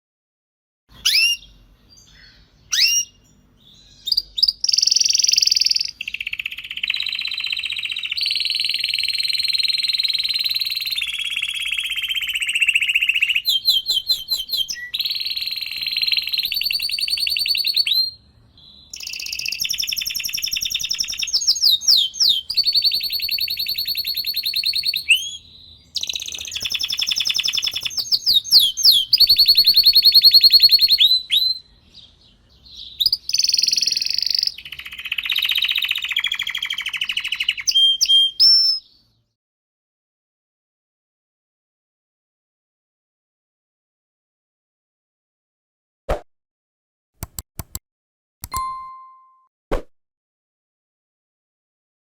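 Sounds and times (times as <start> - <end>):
canary singing trills: 0.9 - 39.2.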